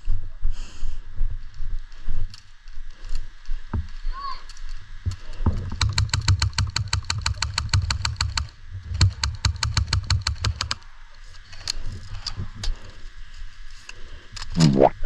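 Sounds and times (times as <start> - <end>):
airsoft gun automatic fire: 5.7 - 10.8.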